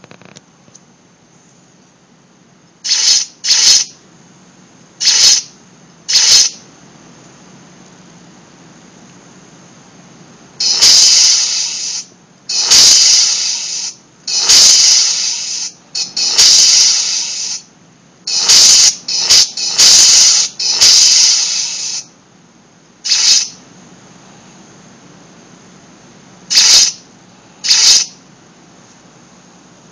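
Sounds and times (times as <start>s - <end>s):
low background hum: 0.0s - 29.9s
hissing bursts from small speaker: 2.8s - 4.0s, 5.0s - 6.6s, 10.6s - 17.7s, 18.3s - 22.1s, 23.0s - 23.6s, 26.5s - 28.2s.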